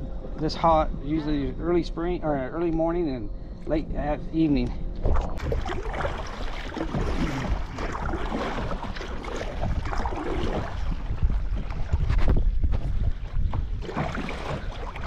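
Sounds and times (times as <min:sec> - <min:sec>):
wind rumbling on microphone: 0:00.0 - 0:15.0
water splashing around kayak: 0:05.0 - 0:15.0.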